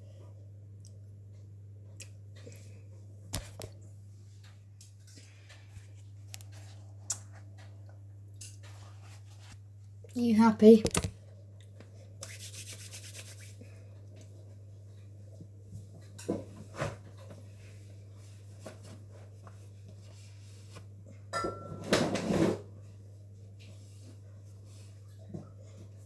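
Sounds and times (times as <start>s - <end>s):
kitchen clatter: 21.4s - 22.6s.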